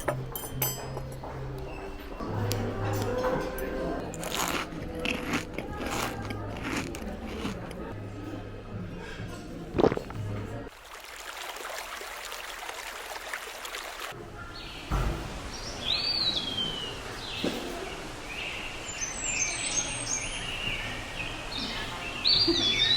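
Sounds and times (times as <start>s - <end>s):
outdoor ambience: 12.0s - 22.9s
birds chirping: 14.2s - 22.9s.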